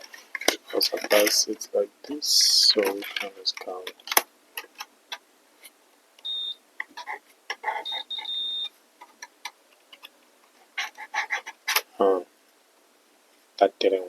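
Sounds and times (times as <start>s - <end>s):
multimeter continuity beeps: 6.2s - 6.6s, 7.7s - 8.7s.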